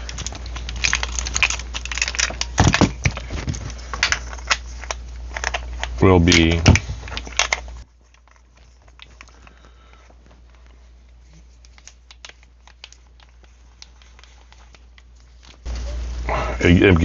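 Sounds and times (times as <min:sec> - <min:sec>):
small parts clicking and tapping: 0:00.0 - 0:10.8
low steady hum: 0:00.0 - 0:17.0.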